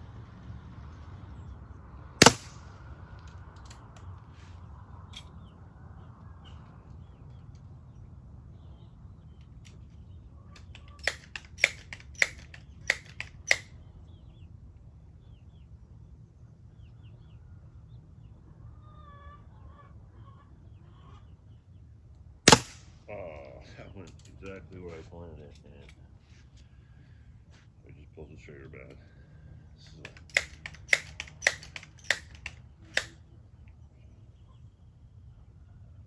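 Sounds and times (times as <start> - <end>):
sharp clicks: 2.2 - 2.6, 10.6 - 13.7, 22.5 - 22.9, 29.8 - 33.2
pellet pistol shot: 2.2 - 2.8, 11.0 - 13.7, 22.5 - 23.0, 30.0 - 33.1.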